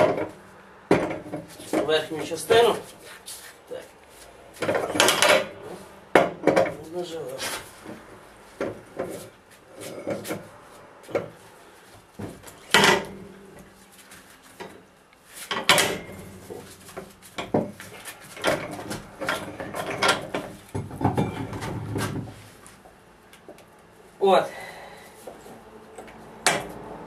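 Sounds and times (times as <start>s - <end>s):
metal parts clanking and scraping: 4.6s - 5.8s, 12.5s - 13.4s, 15.5s - 16.8s, 17.4s - 22.3s.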